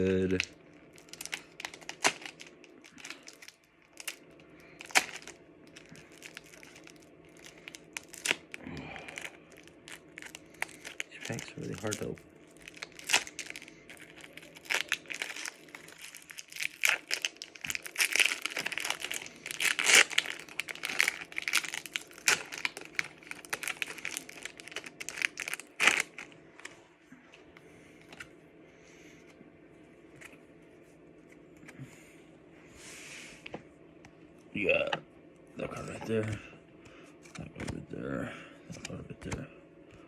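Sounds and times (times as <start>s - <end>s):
foil wrapper crinkling and tearing: 0.0s - 26.8s.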